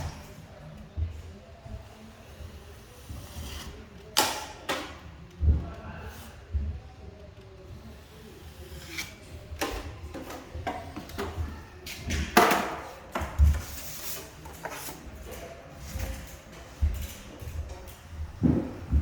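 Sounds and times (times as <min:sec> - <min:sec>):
taping knife scraping: 0:02.7 - 0:03.8, 0:07.8 - 0:09.7.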